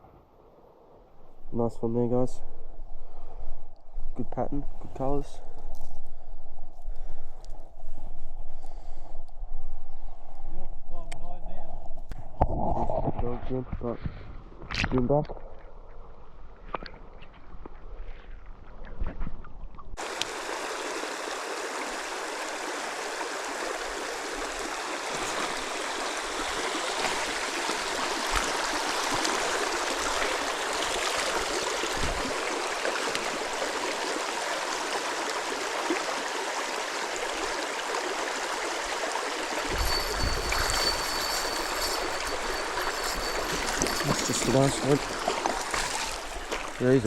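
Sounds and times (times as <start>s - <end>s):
stream water running: 14.6s - 47.0s.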